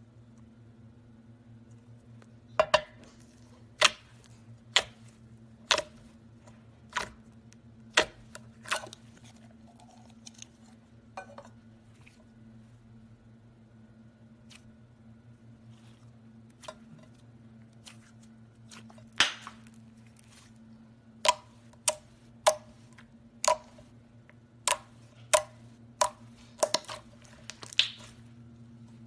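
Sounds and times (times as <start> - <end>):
steady low hum: 0.0 - 29.0
slime popping: 24.7 - 28.2.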